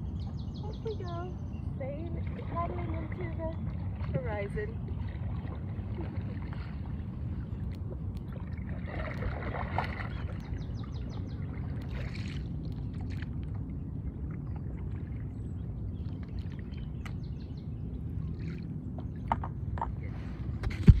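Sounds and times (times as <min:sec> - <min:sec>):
low steady rumble: 0:00.0 - 0:21.0
paddle splashing through water: 0:02.2 - 0:07.4, 0:08.3 - 0:13.6.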